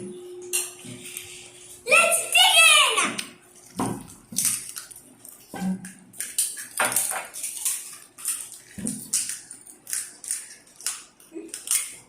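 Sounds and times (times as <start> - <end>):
crunching and chewing: 3.6 - 12.0.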